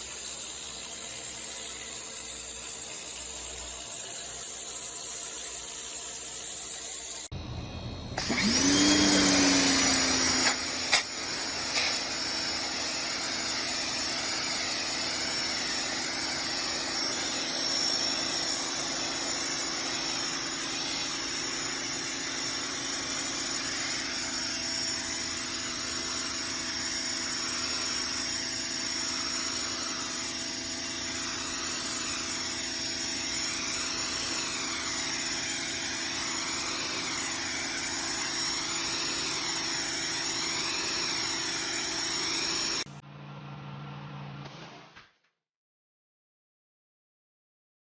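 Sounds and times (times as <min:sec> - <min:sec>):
pressure washer spraying: 0:08.2 - 0:42.9.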